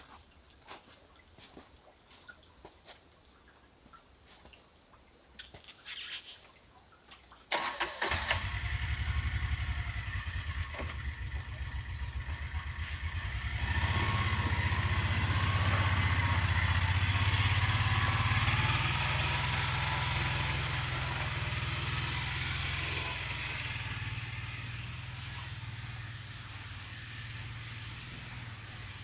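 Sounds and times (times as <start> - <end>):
small vehicle engine running: 7.5 - 29.0.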